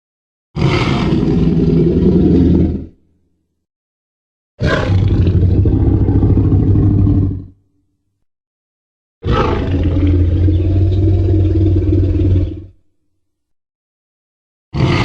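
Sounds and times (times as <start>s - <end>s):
dinosaur roar: 0.6s - 3.0s, 4.6s - 7.6s, 9.2s - 12.8s, 14.8s - 15.0s.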